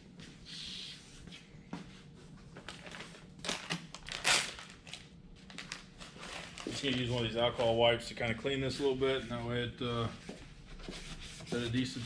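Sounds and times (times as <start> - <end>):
wipe packet crinkling: 2.7 - 7.8.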